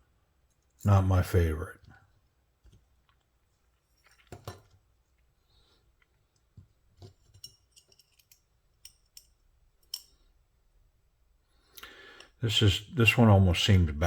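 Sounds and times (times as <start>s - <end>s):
small metal parts clicking: 7.3s - 10.2s.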